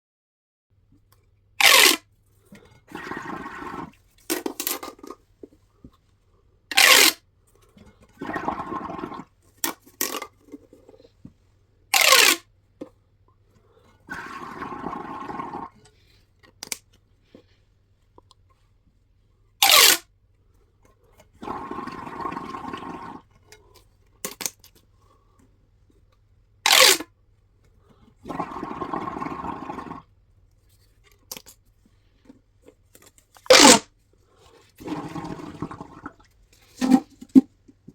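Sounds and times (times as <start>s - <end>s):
buzzy ratcheting plastic tube stretches: 1.6s - 2.1s, 3.0s - 5.2s, 6.7s - 7.2s, 8.4s - 11.0s, 11.9s - 12.5s, 19.6s - 20.1s, 26.6s - 27.1s, 33.4s - 33.9s
loud plastic tube pops: 33.5s - 33.8s.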